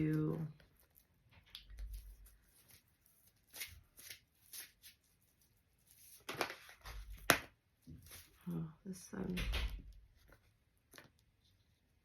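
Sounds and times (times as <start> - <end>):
cards being shuffled: 0.0 - 8.4.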